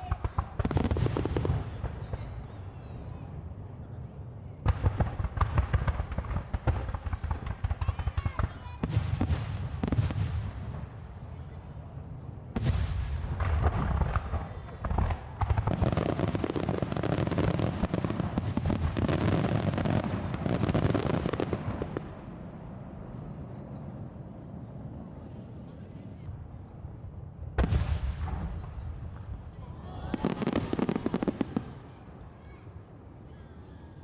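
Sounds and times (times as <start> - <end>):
crackling firework bursts: 0.0 - 2.5, 4.6 - 11.2, 12.5 - 22.8, 27.6 - 32.2
fireworks bursting: 0.0 - 2.8, 4.6 - 11.2, 12.5 - 23.2, 27.6 - 32.2.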